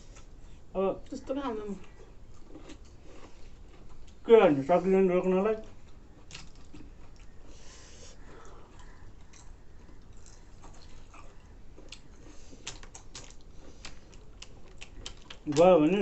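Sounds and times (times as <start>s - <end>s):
chewing mouth noises: 1.8s - 4.2s, 5.6s - 15.7s.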